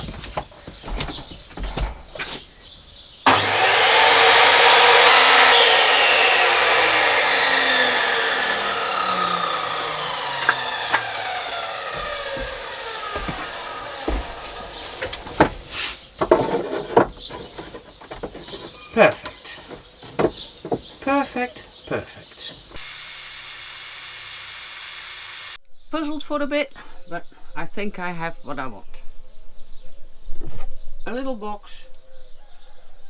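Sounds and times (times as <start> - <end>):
electric power saw spinning: 3.3 - 15.8, 22.7 - 25.6
wood being handled knocks: 8.2 - 21.7.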